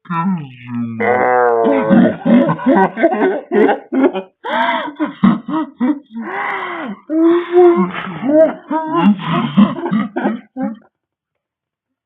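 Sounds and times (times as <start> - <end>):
person laughing and wheezing: 1.6 - 10.9.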